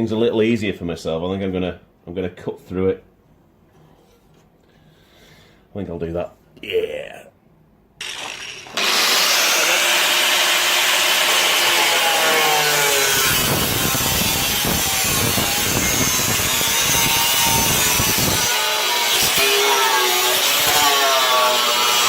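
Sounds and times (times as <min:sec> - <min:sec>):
power tool cutting steel: 0:08.0 - 0:22.0.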